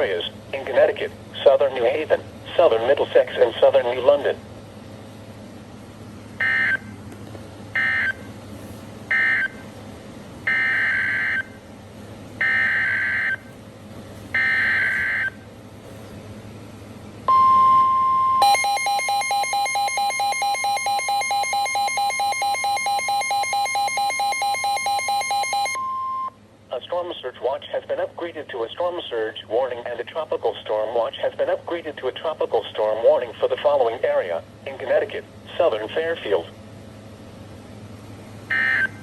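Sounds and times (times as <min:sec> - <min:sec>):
rapidly pulsing electronic alarm: 0:06.4 - 0:06.9, 0:07.7 - 0:08.3, 0:09.1 - 0:09.7, 0:10.4 - 0:11.6, 0:12.4 - 0:13.5, 0:14.3 - 0:15.4, 0:17.3 - 0:26.3, 0:38.5 - 0:39.0
steady alert tone: 0:17.3 - 0:26.3.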